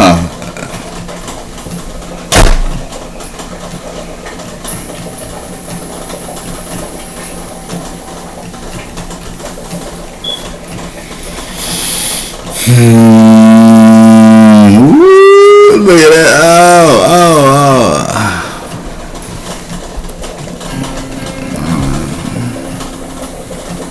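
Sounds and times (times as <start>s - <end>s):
steady hiss: 1.4s - 14.3s, 15.7s - 23.9s
sharp knock: 2.3s - 2.8s.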